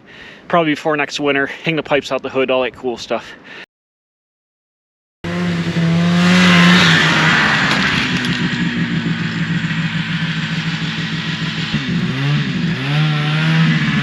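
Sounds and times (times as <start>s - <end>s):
snowmobile engine running: 5.2s - 14.0s.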